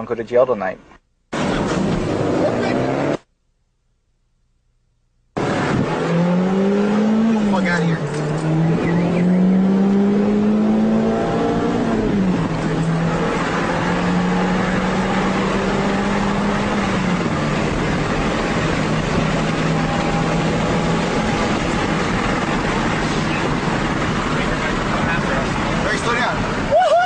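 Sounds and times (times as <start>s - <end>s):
road and wind noise: 0.0s - 3.3s, 5.3s - 27.0s
car engine running: 5.4s - 26.7s.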